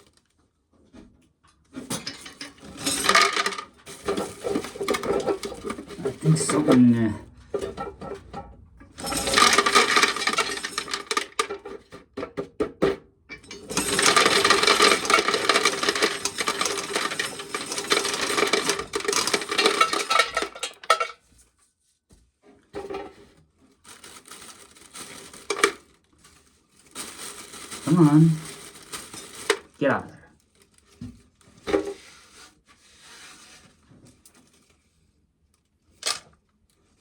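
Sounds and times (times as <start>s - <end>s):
dry corn kernels rattling into a pail: 2.0s - 8.4s, 9.0s - 12.0s, 13.5s - 21.2s, 23.8s - 25.9s, 26.9s - 30.2s.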